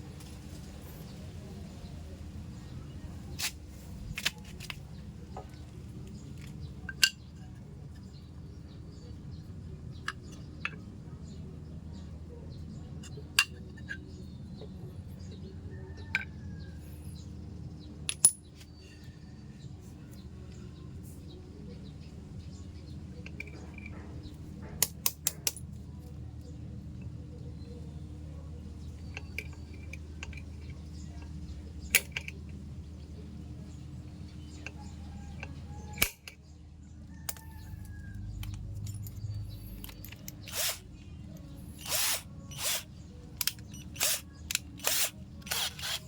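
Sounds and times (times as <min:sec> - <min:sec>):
steady low hum: 0:00.0 - 0:13.3
metal tools clinking: 0:18.1 - 0:18.6, 0:37.3 - 0:40.8.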